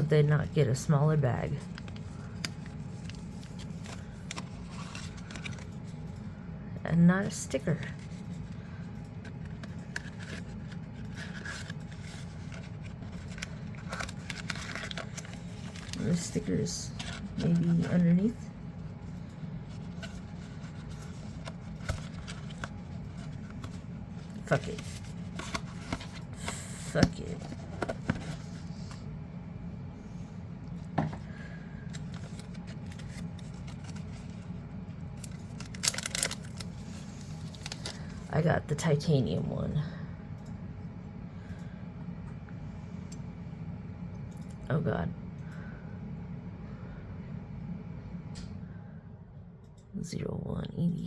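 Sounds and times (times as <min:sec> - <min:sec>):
steady low hum: 0:00.0 - 0:51.0
packaging rustling: 0:01.6 - 0:06.0, 0:07.8 - 0:18.0, 0:18.8 - 0:29.0, 0:31.9 - 0:38.3.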